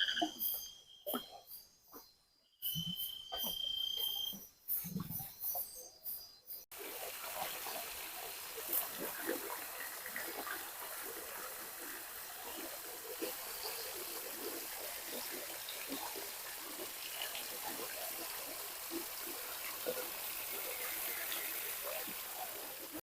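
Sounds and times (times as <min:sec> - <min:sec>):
river water trickling and gurgling: 0:06.7 - 0:23.0.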